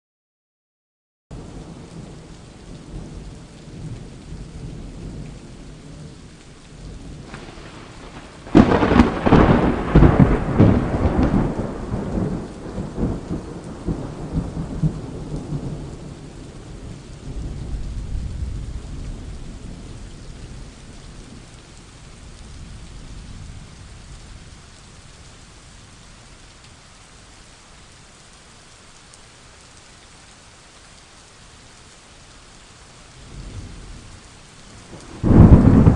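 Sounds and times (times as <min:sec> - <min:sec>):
steady rain: 0:01.3 - 0:35.9
thunderclap and rumbling: 0:06.8 - 0:21.5, 0:33.2 - 0:35.9.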